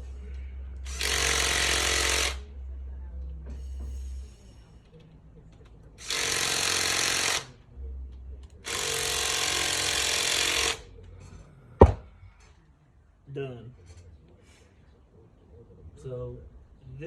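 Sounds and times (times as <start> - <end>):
power tool loosening bolts: 0.8 - 2.4, 6.0 - 7.5, 8.6 - 10.9.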